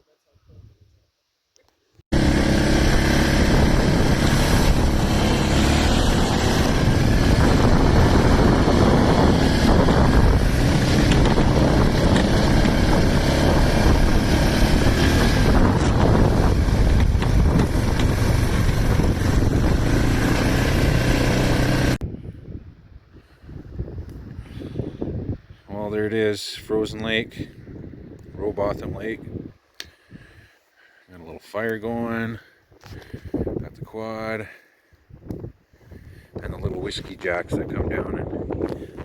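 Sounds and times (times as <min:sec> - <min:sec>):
dense rushing noise: 0:02.1 - 0:22.0
engine running: 0:02.1 - 0:22.0.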